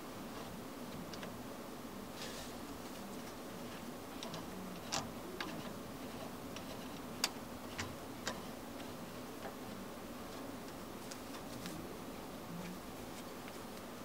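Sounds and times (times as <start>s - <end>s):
faint low hum: 0.0s - 14.0s
light clicks and taps: 4.2s - 11.8s.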